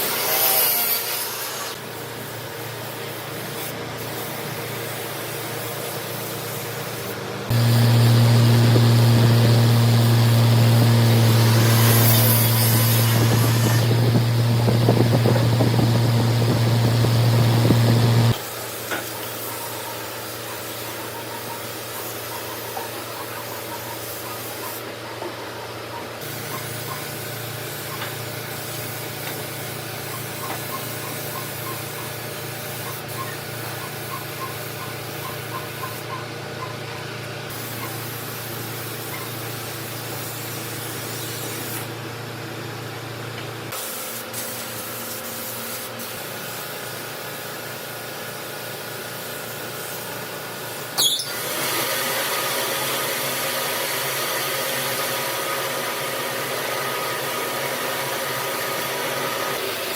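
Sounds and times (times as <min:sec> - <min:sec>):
loud machine hum: 0:06.6 - 0:18.5.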